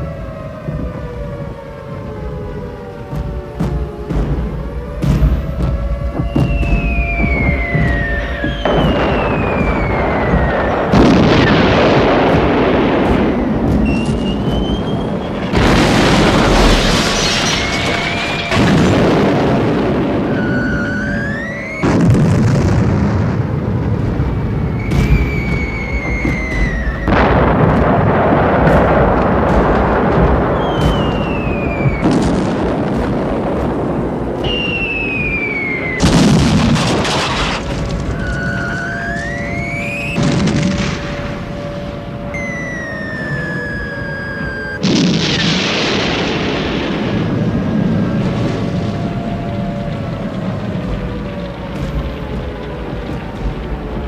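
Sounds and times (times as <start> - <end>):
bomb explosions: 0.0 - 54.0
whistling tones sliding in pitch: 5.9 - 11.5, 13.8 - 18.6, 20.3 - 21.9, 24.7 - 27.7, 30.6 - 32.0, 34.4 - 36.2, 38.1 - 45.4.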